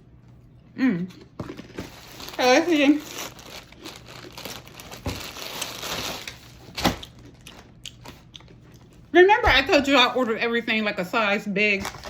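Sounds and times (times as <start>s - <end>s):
packaging crinkling and rustling: 1.4s - 8.3s, 11.8s - 12.0s.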